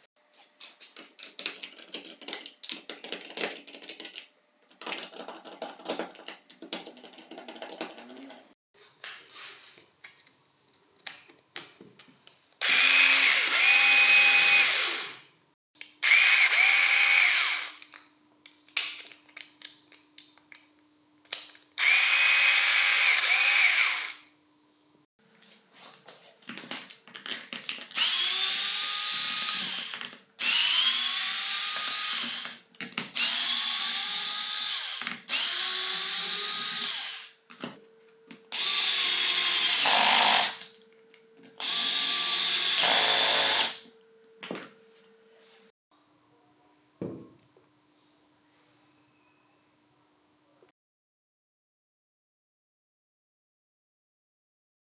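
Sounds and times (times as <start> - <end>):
cordless screwdriver motor whining: 12.6 - 15.1, 16.0 - 17.8, 21.8 - 24.2, 28.0 - 32.6, 33.2 - 37.4, 38.6 - 40.6, 41.6 - 43.8.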